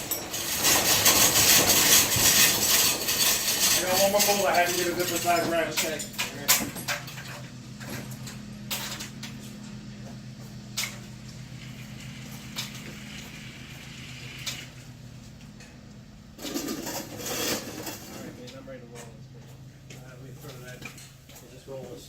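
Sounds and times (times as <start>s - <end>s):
metal clatter: 0.0s - 9.6s, 16.4s - 19.2s
steady low hum: 0.0s - 22.0s.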